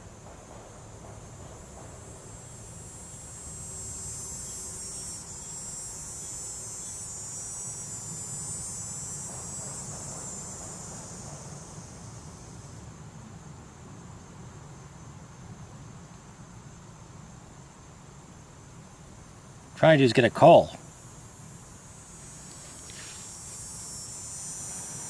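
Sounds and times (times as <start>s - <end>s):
insects shrilling: 1.9s - 12.8s, 19.8s - 25.0s.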